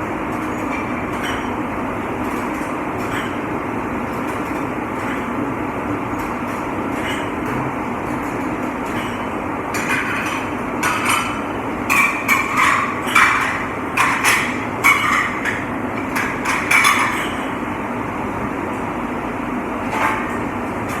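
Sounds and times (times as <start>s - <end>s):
steady machine hum: 0.0s - 21.0s
dishes and cutlery clattering: 9.8s - 17.4s.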